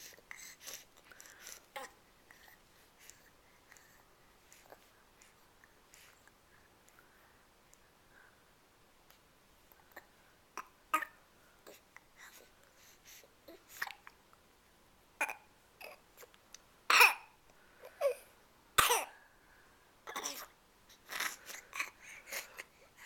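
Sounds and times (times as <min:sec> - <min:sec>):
baby snorting and coughing: 0:15.2 - 0:16.0, 0:16.9 - 0:17.4, 0:18.8 - 0:19.2, 0:20.1 - 0:22.7.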